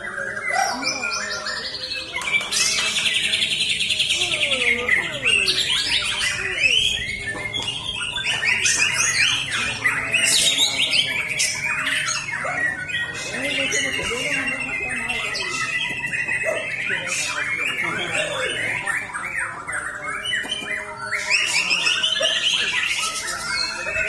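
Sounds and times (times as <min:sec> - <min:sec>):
bird singing: 0:00.0 - 0:24.0.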